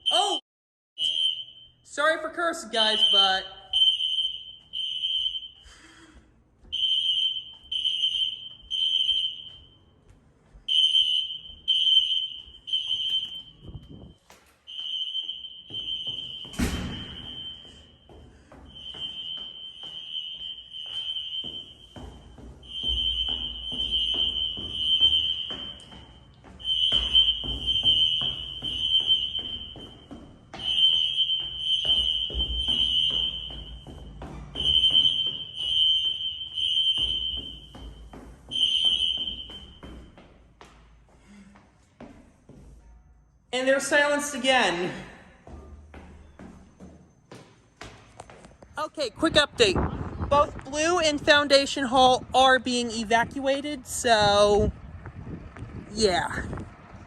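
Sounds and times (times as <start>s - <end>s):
fire alarm horn beeps: 1.0s - 5.6s, 6.7s - 10.0s, 10.7s - 39.8s.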